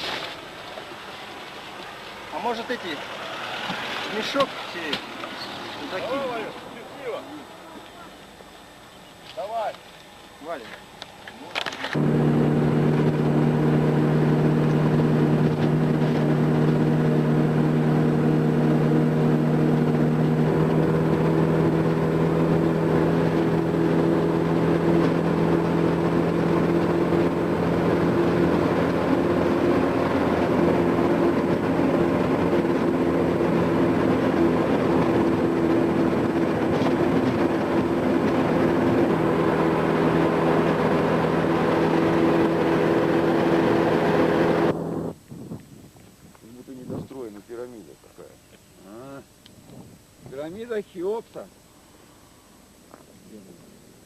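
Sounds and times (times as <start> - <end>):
van engine running: 0.0 - 45.2.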